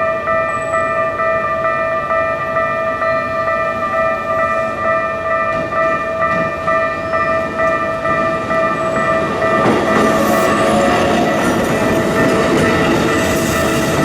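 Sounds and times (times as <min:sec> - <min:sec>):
level-crossing alarm ringing: 0:00.0 - 0:14.0
train rumbling: 0:00.0 - 0:14.0.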